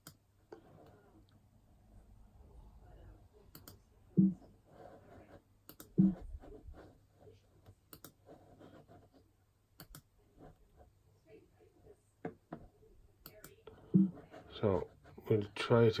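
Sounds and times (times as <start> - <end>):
computer mouse clicking: 3.5 - 4.3, 5.6 - 6.2, 7.9 - 8.2, 9.8 - 10.1, 13.2 - 14.1.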